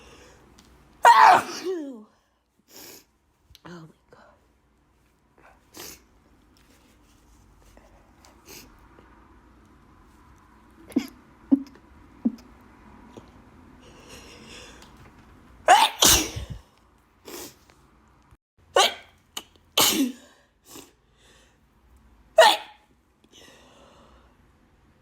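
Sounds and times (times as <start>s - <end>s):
person sneezing: 1.0s - 1.9s, 15.7s - 16.6s, 18.8s - 19.2s, 19.8s - 21.0s, 22.4s - 22.8s
sniffs and breaths: 6.7s - 8.9s.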